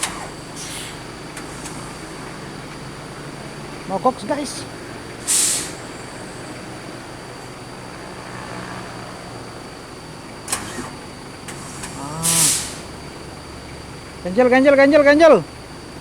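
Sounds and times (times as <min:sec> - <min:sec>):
air brake hissing: 0:00.0 - 0:03.5, 0:05.0 - 0:07.6, 0:10.4 - 0:13.3.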